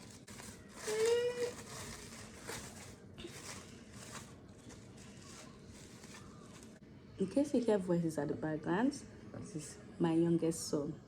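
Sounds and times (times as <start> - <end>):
faint clicks and rustles: 0.0 - 6.8.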